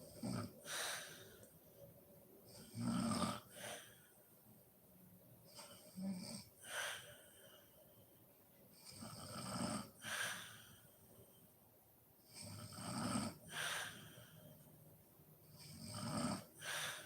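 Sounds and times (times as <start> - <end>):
woman snoring heavily: 0.0 - 1.3, 2.5 - 4.0, 8.9 - 10.6, 12.3 - 14.4, 15.5 - 17.0.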